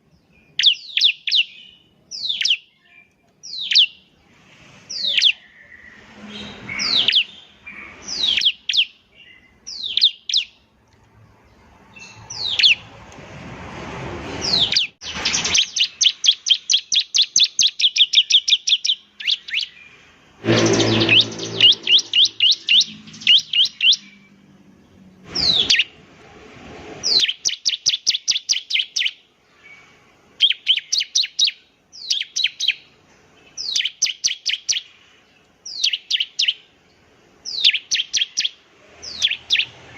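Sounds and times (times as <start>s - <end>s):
rushing noises: 20.4s - 23.2s
prinia song: 20.4s - 23.9s.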